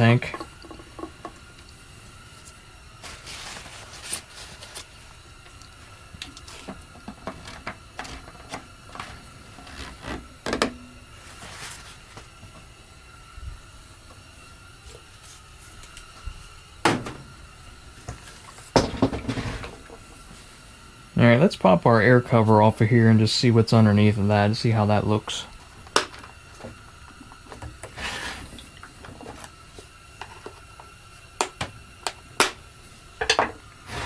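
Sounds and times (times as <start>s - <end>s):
tools clattering on workbench: 18.7s - 19.8s, 33.2s - 33.6s.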